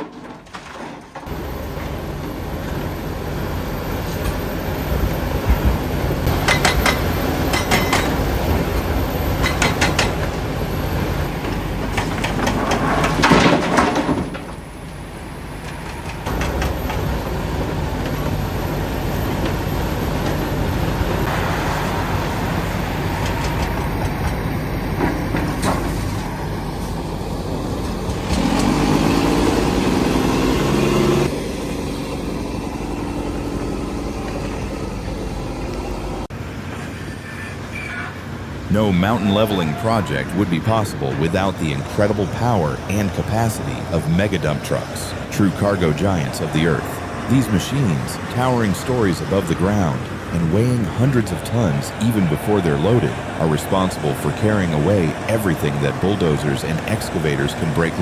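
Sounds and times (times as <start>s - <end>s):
diesel engines running: 1.2s - 58.0s
steady pitched engine drone: 1.3s - 12.8s, 15.1s - 38.0s
steel clanks and knocks: 6.3s - 8.3s.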